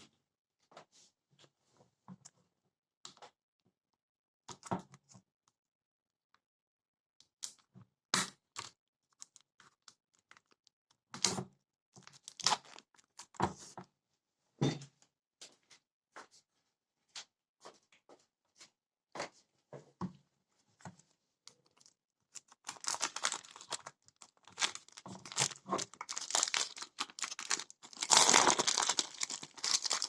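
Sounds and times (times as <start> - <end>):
packaging tearing and crinkling: 12.0 - 13.4, 21.7 - 30.0.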